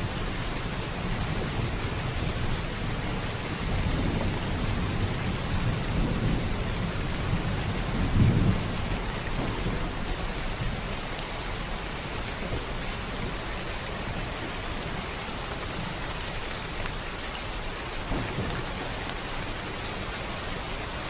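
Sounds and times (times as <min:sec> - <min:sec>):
heavy rain on a roof: 0:00.0 - 0:21.0
low rumble of thunder: 0:00.0 - 0:21.0
single raindrop hits: 0:15.9 - 0:20.1.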